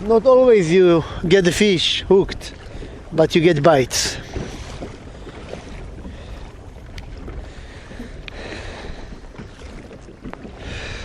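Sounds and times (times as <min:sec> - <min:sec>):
water lapping against hull: 0:00.0 - 0:11.0
wind rumbling on microphone: 0:00.0 - 0:11.0
faint clicks: 0:08.2 - 0:08.4.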